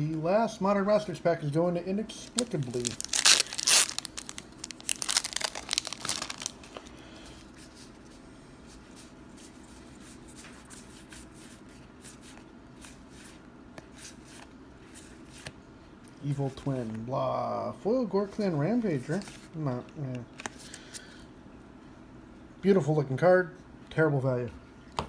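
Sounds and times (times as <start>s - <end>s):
foil wrapper tearing and crinkling: 2.3s - 7.0s.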